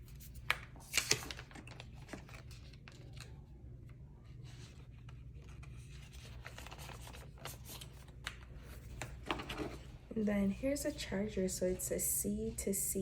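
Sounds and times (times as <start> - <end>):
paper and cardboard rustling: 4.4 - 10.0.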